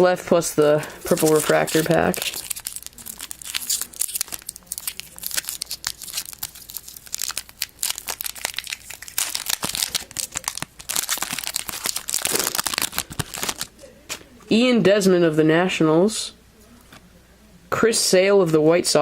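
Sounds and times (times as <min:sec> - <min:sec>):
foil wrapper crinkling and tearing: 0:00.6 - 0:13.7.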